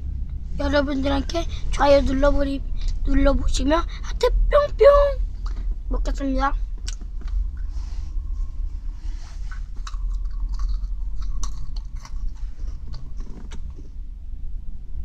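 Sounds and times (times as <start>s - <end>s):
steady low hum: 0.0s - 15.0s
chewing crunchy snacks: 9.4s - 14.0s.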